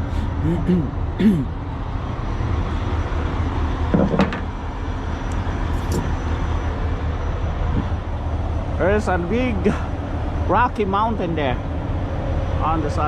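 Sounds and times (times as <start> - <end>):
diesel engine droning: 0.0 - 13.0
short squeak: 5.4 - 6.4.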